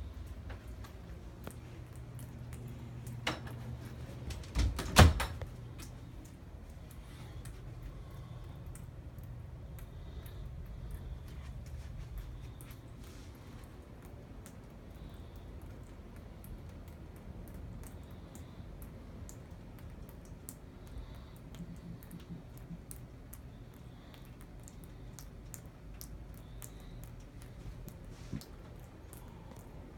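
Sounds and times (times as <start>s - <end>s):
steady low hum: 0.0s - 29.9s
water drops ticking: 13.8s - 29.8s.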